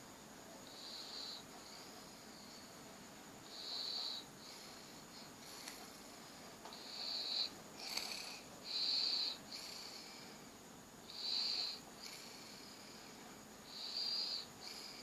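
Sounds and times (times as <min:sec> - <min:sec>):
person snoring with whistling wheeze: 0:06.8 - 0:10.2, 0:11.1 - 0:12.6, 0:13.7 - 0:15.0.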